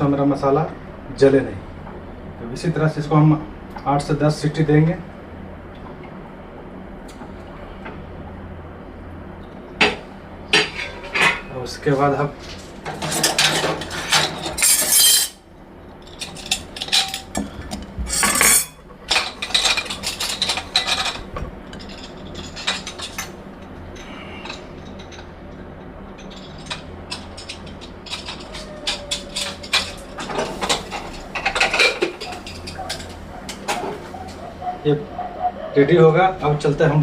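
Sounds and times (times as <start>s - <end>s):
metal pots and utensils clattering: 9.8s - 11.6s, 12.5s - 15.4s, 16.2s - 23.4s, 26.2s - 34.3s.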